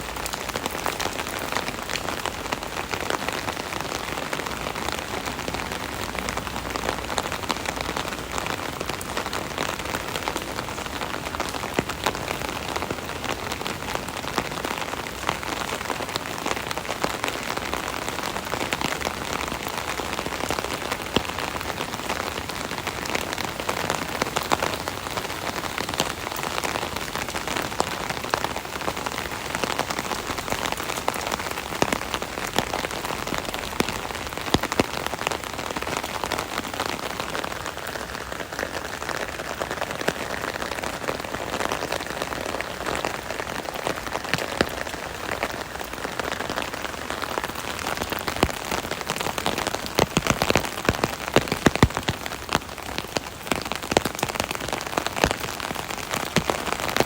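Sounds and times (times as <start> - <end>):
rain pattering on an umbrella: 0.0 - 57.0.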